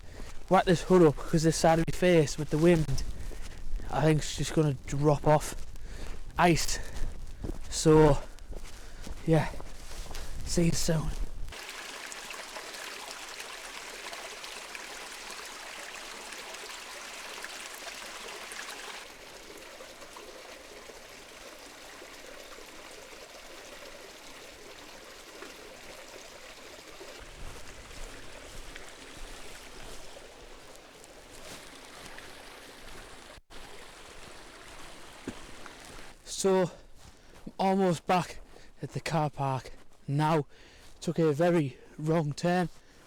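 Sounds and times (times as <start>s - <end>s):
stream water trickling: 0.0s - 43.0s.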